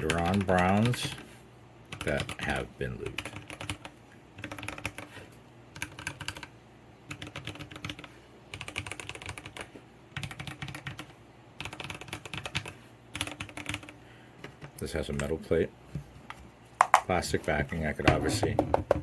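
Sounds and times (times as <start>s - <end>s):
mechanical keyboard typing: 0.0s - 1.2s, 1.9s - 2.6s, 3.2s - 5.1s, 5.8s - 6.5s, 7.1s - 14.0s.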